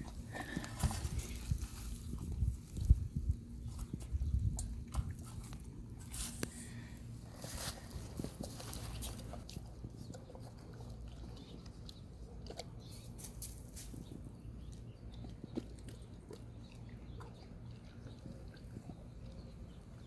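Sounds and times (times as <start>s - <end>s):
steady low hum: 0.0s - 20.0s
dog chewing crunchy treat: 7.3s - 20.0s.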